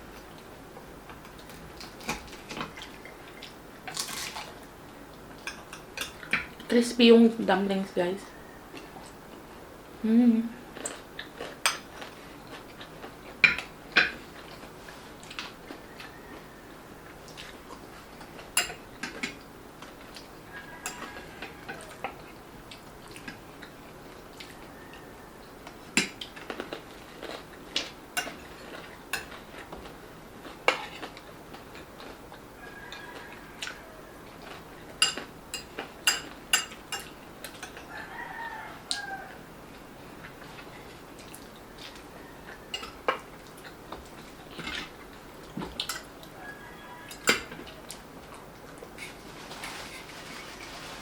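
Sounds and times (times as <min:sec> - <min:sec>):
crunching crispy food: 0:03.8 - 0:04.6.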